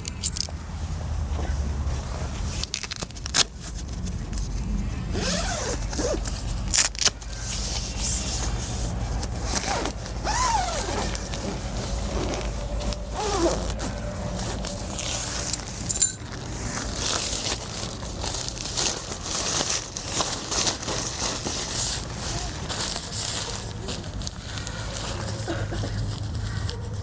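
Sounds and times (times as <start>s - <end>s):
camping gear rustling and scraping: 0.2s - 27.0s.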